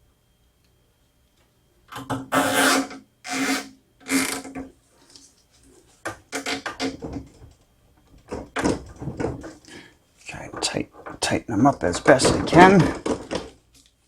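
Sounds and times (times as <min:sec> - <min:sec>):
zip ties ratcheting: 0:02.4 - 0:04.5.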